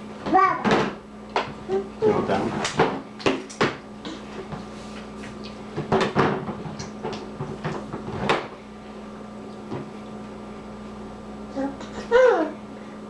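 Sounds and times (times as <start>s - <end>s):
steady low hum: 0.0s - 13.0s
sharp knocks and clatters: 5.8s - 8.5s.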